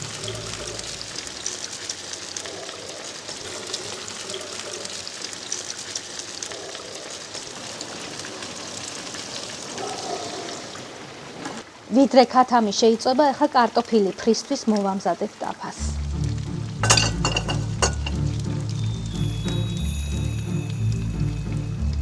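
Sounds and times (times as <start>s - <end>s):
chicken sizzling in hot oil: 0.0s - 10.4s, 13.3s - 22.0s.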